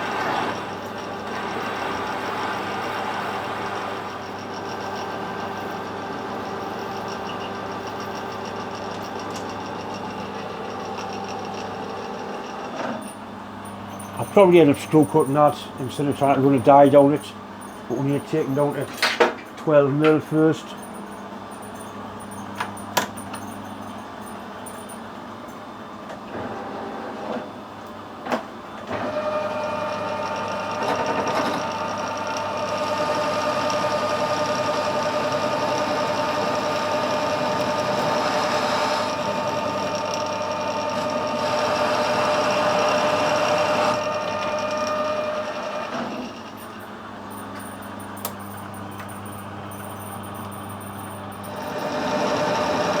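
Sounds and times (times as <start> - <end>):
motor hum: 0.0 - 25.0, 28.9 - 53.0
lathe ringing cutting sound: 13.0 - 25.0, 31.8 - 53.0.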